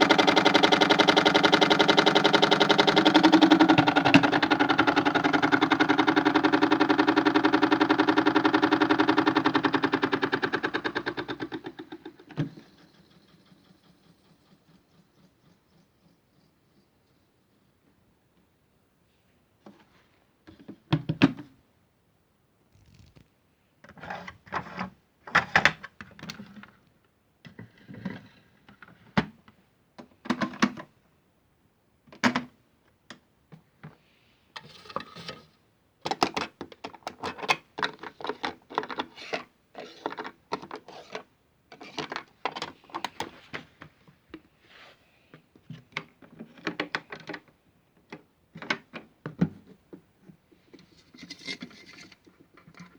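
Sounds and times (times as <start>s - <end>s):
toy washing machine drum rattling: 0.0s - 12.7s.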